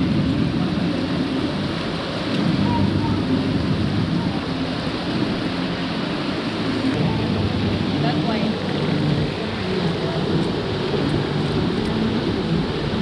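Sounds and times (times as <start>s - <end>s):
falling water roaring: 0.0s - 13.0s.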